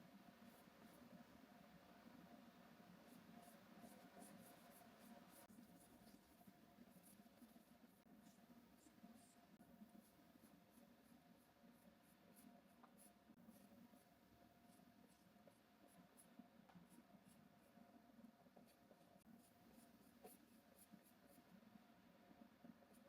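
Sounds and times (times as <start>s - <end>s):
brush strokes on canvas: 3.0s - 17.8s.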